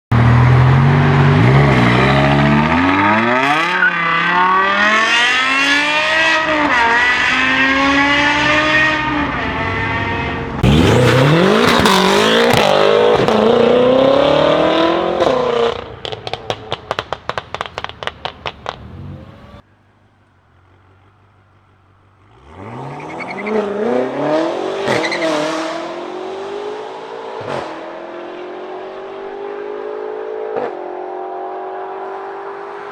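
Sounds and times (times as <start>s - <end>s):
car engine accelerating hard: 0.1s - 19.7s, 20.7s - 32.9s
exhaust pops and crackles: 10.6s - 22.3s.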